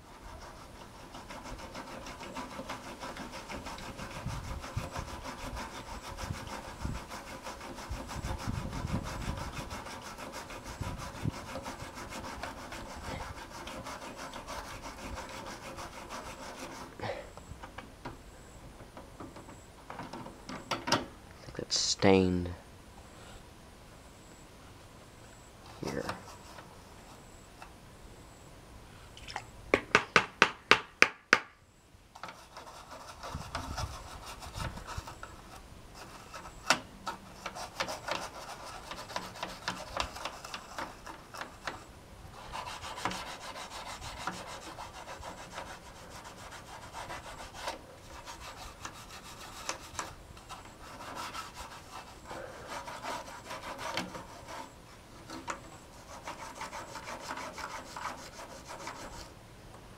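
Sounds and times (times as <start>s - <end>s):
scratchy rubbing on plastic case: 0.0s - 17.0s, 25.7s - 27.3s, 32.2s - 59.4s.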